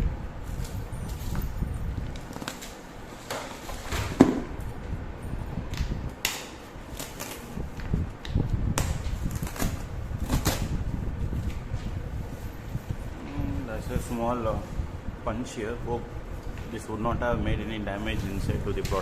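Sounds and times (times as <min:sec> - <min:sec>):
sharp cardboard snap: 0:05.7 - 0:07.4.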